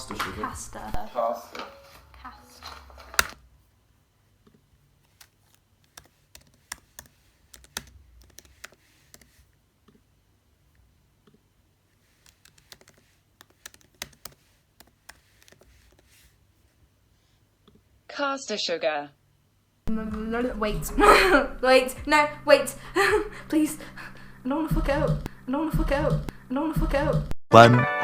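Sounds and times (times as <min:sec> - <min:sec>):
faint keyboard typing: 0:04.4 - 0:16.4.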